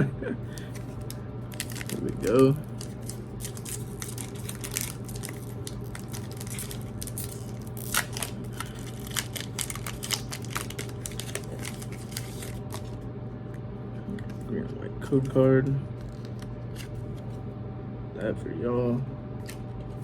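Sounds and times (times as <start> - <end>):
foil wrapper crinkling: 0.6 - 13.0.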